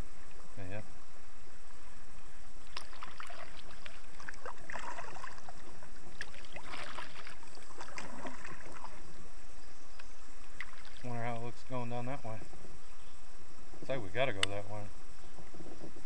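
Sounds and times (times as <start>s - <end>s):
water splashing around a kayak: 2.6s - 9.3s, 10.4s - 11.7s.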